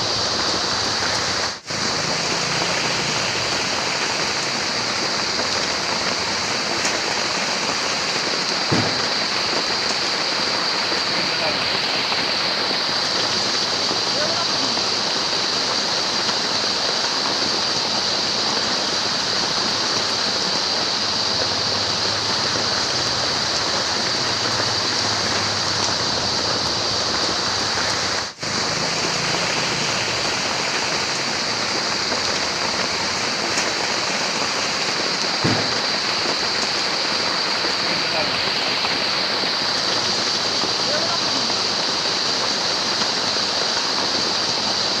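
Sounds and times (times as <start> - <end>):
steady rain hiss: 0.0 - 45.0
low thump: 8.7 - 9.1, 35.4 - 35.8.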